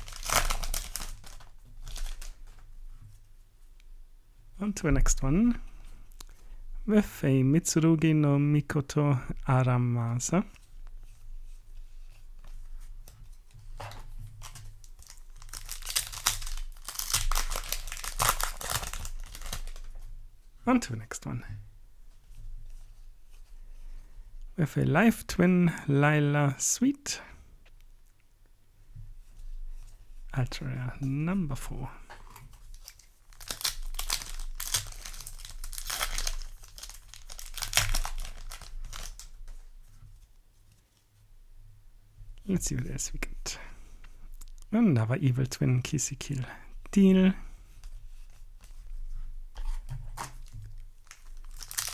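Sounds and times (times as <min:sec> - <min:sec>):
foil wrapper crinkling and tearing: 0:00.0 - 0:02.5, 0:13.7 - 0:20.1, 0:32.3 - 0:39.8, 0:50.1 - 0:51.9.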